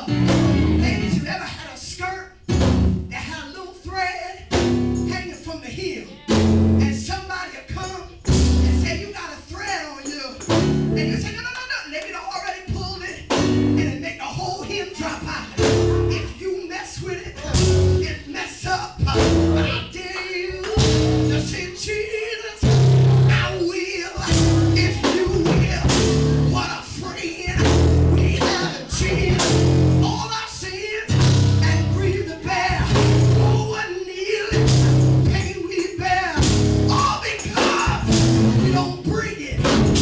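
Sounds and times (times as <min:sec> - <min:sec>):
bass notes: 0:00.0 - 0:01.4, 0:02.5 - 0:03.2, 0:04.4 - 0:05.4, 0:06.2 - 0:07.2, 0:08.2 - 0:09.1, 0:10.4 - 0:11.4, 0:13.2 - 0:16.4, 0:17.1 - 0:21.9, 0:22.6 - 0:30.4, 0:31.1 - 0:33.8, 0:34.5 - 0:35.6, 0:36.2 - 0:40.0
guitar: 0:00.0 - 0:01.6, 0:04.4 - 0:40.0
steady drum beat: 0:00.0 - 0:01.6, 0:02.5 - 0:11.6, 0:12.6 - 0:33.9, 0:34.5 - 0:40.0.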